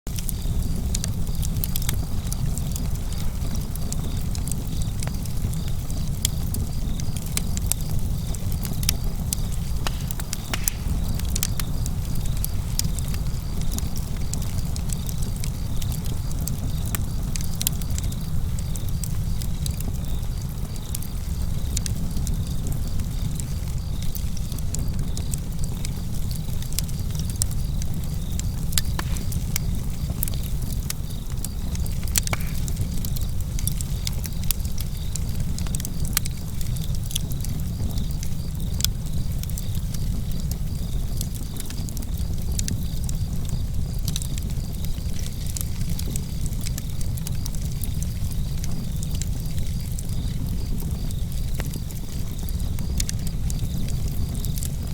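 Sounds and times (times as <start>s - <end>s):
fire burning rumble: 0.1s - 54.9s
fire crackling and popping: 0.1s - 54.9s.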